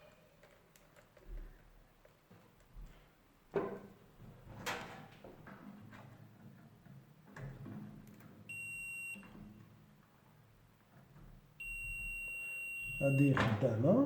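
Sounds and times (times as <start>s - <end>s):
continuity tester beeping: 8.5s - 9.4s, 11.6s - 13.6s.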